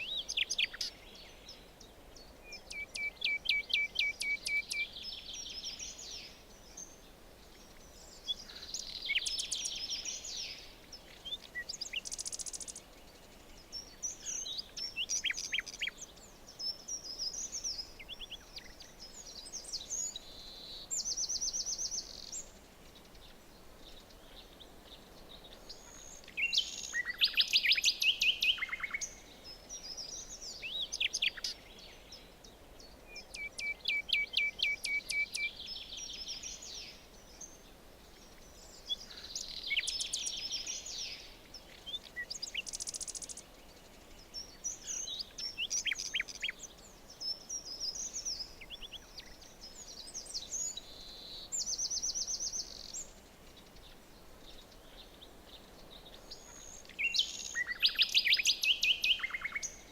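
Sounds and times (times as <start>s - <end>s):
faint steady hiss: 0.0s - 59.9s
songbirds singing: 0.0s - 59.9s.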